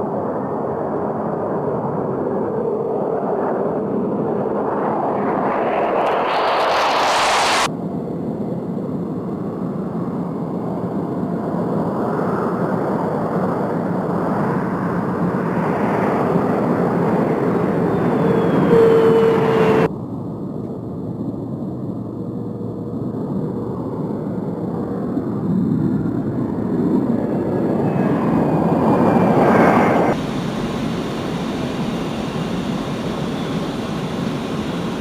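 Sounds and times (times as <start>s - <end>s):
jet engine rushing: 2.2s - 7.7s, 14.1s - 19.9s, 26.0s - 35.0s.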